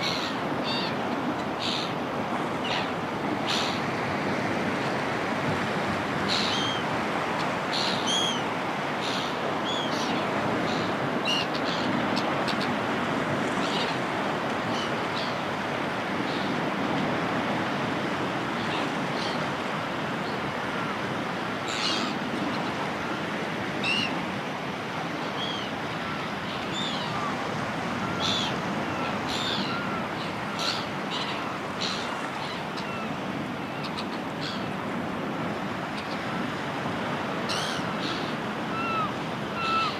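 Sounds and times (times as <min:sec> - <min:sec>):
seagulls calling: 0:00.0 - 0:02.0, 0:06.3 - 0:12.8, 0:21.6 - 0:22.8, 0:25.2 - 0:34.8, 0:37.4 - 0:39.9
sea surf: 0:00.0 - 0:39.9.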